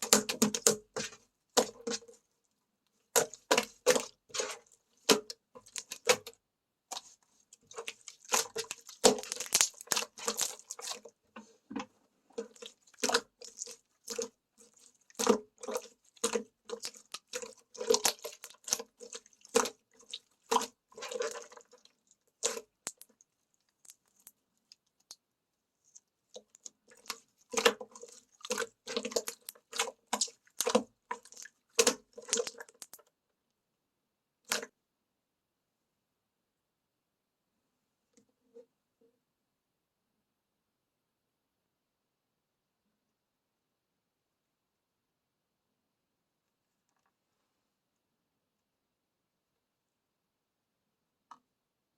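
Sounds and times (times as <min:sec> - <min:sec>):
slime crackling pops: 0:08.4 - 0:10.6.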